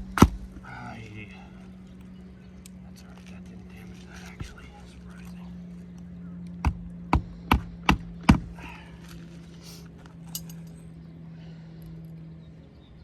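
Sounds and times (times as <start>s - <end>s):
hammer striking a nail: 6.6s - 8.5s.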